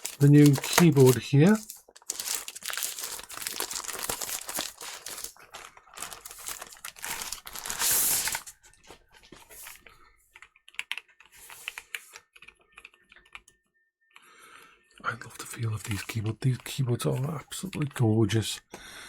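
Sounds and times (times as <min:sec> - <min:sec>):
packaging crinkling: 0:00.0 - 0:09.0.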